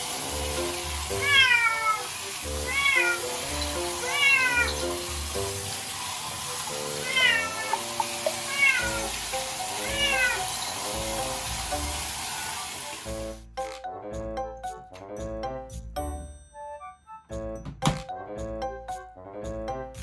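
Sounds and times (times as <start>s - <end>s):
cat meowing: 1.2s - 3.2s, 4.0s - 4.9s, 7.0s - 9.1s, 9.8s - 10.5s
background music with steady beat: 13.0s - 20.0s.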